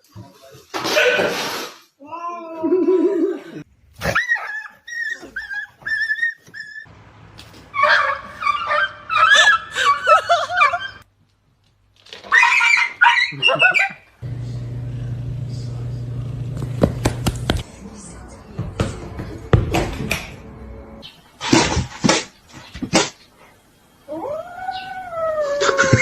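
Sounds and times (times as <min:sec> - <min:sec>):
dog whining and yelping: 0:04.0 - 0:06.9, 0:07.8 - 0:11.0.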